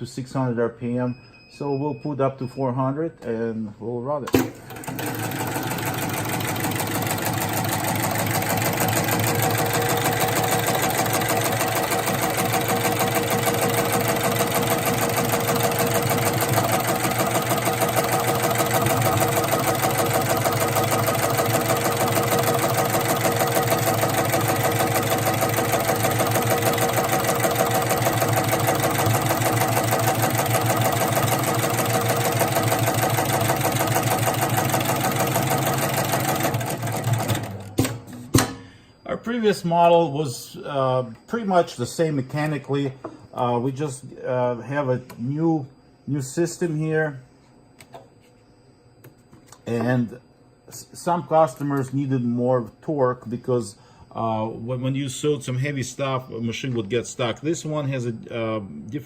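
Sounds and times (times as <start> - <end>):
sewing machine stitching: 4.3 - 38.0.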